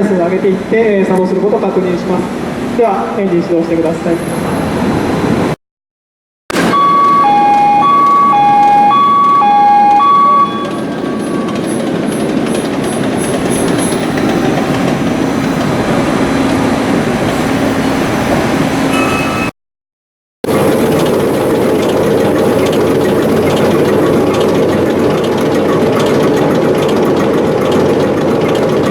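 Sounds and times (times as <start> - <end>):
two-tone alarm: 6.5 - 11.9, 18.9 - 19.5
marine diesel engine running: 6.5 - 19.0, 20.4 - 28.9.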